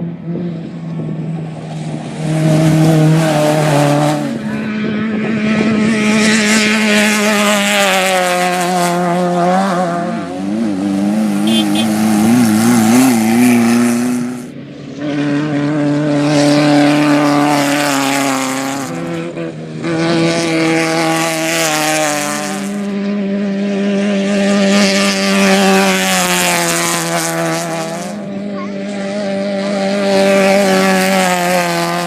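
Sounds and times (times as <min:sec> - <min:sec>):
off-road vehicle engine running hard: 0:00.0 - 0:32.0
wind noise: 0:04.6 - 0:06.8
dirt noise: 0:09.2 - 0:15.2.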